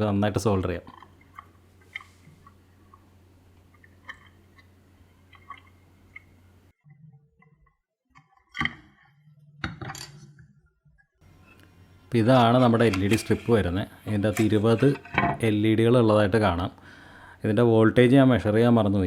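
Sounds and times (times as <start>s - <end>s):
faint steady hum: 0.0s - 6.8s, 11.2s - 19.0s.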